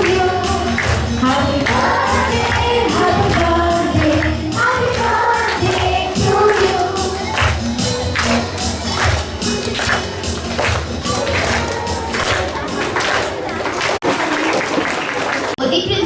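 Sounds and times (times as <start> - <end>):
children singing together: 0.0 - 9.2, 11.1 - 13.6
percussive beat: 0.0 - 14.0.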